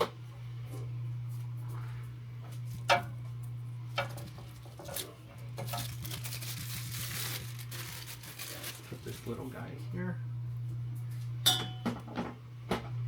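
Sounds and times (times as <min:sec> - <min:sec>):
steady low hum: 0:00.0 - 0:13.0
rustling: 0:04.2 - 0:09.4.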